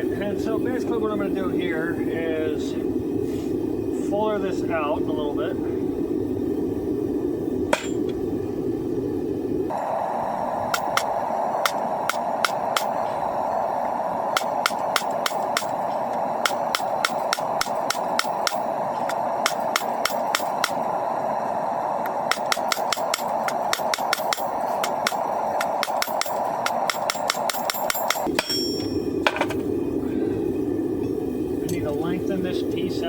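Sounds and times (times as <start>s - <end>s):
steady rushing noise: 0.0s - 33.0s
hammer striking steel on anvil: 7.7s - 8.1s, 14.4s - 15.8s, 16.4s - 20.8s, 22.3s - 29.6s.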